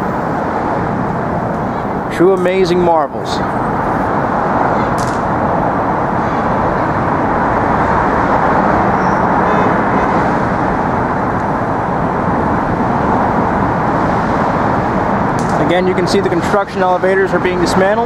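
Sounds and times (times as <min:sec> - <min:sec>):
traffic rumble: 0:00.0 - 0:18.0.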